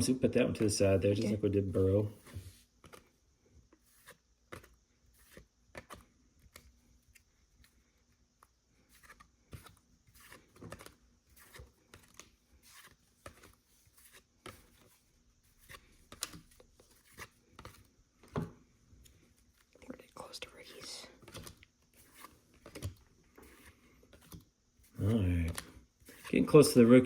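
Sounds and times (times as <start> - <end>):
trading cards flipping: 8.9 - 15.0, 15.6 - 18.3, 21.2 - 26.8.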